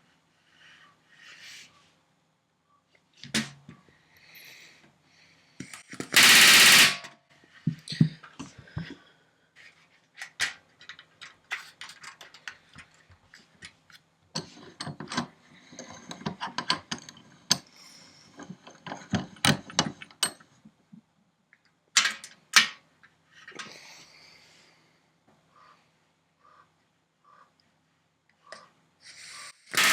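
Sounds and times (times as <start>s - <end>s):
pneumatic rivet gun hammering: 6.1s - 7.1s
tools clinking and knocking: 10.2s - 13.8s, 14.4s - 17.7s, 22.0s - 22.8s.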